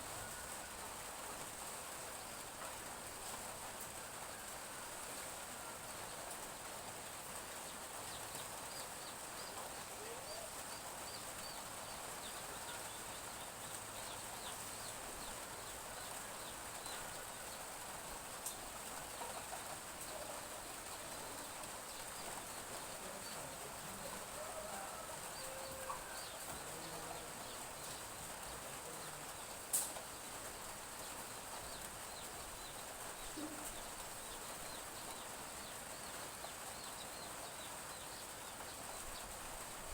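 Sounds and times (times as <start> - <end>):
light drizzle hissing: 0.0 - 39.9
chicks peeping: 8.0 - 17.6
chickens clucking: 8.1 - 30.0, 31.0 - 36.6.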